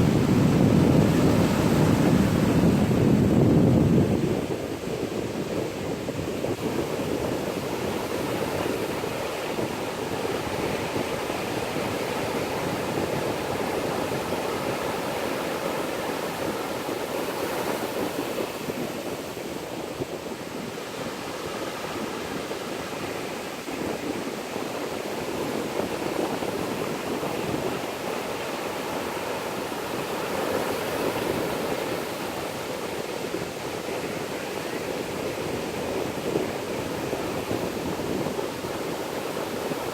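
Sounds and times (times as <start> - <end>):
ocean waves breaking: 0.0 - 39.9.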